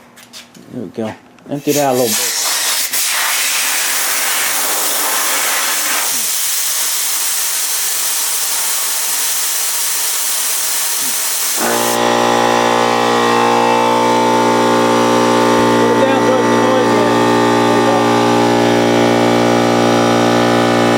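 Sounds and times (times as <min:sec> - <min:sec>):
compressed air hissing: 0:01.7 - 0:12.0
air compressor motor running: 0:01.7 - 0:20.9.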